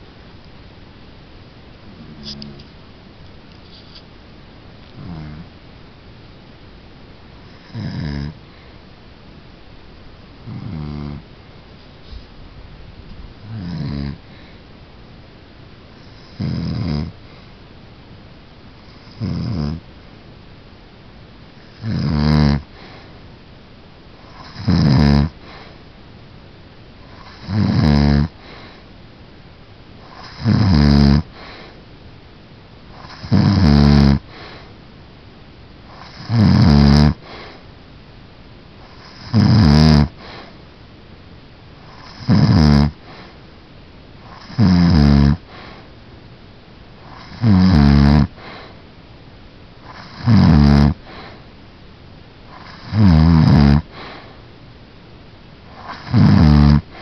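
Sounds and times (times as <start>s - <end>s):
quiet breathing: 1.7s - 2.9s, 7.4s - 9.0s, 13.3s - 14.8s, 15.9s - 17.7s, 22.6s - 23.3s, 25.3s - 25.9s, 28.3s - 29.0s, 31.2s - 31.9s, 34.2s - 34.9s, 37.1s - 37.8s, 40.1s - 40.8s, 42.9s - 43.6s, 45.3s - 46.1s, 48.3s - 49.0s, 50.9s - 51.7s, 52.4s - 53.0s, 53.8s - 54.6s, 55.6s - 56.2s, 56.8s - 57.0s
person snoring: 1.9s - 2.7s, 5.0s - 5.5s, 36.0s - 37.2s, 39.0s - 40.1s, 42.0s - 43.0s, 44.3s - 45.4s, 47.1s - 48.3s, 49.9s - 51.0s, 52.6s - 53.9s, 55.8s - 56.9s.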